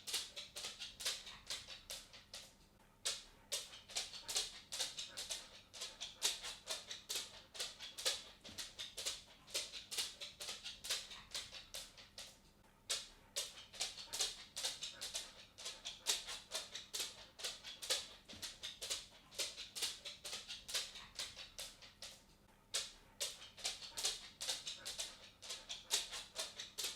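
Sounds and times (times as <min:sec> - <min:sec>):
cat footsteps ticking: 0:03.1 - 0:22.2.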